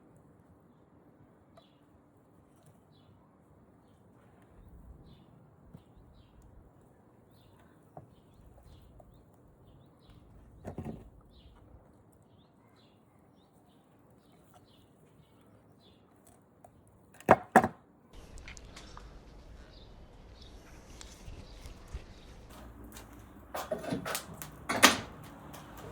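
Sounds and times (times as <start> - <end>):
faint bird chirping: 0.7 - 16.4, 18.2 - 23.5
short rustle: 18.2 - 25.9.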